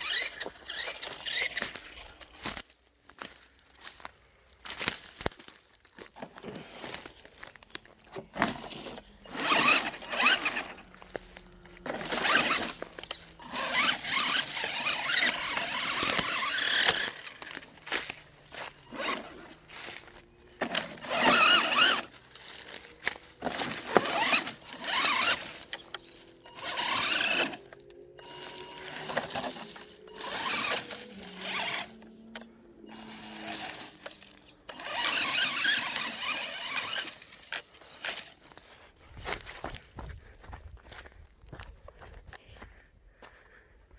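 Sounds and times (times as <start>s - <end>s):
electric motor whining: 0.0s - 2.1s, 8.3s - 38.3s
tyres running over ground: 0.0s - 40.1s.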